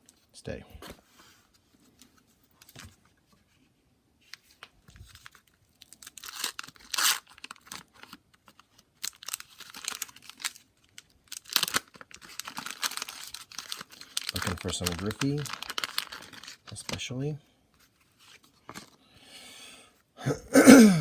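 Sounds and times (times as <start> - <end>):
wax-paper wrappers torn and crinkled: 4.3 - 19.0.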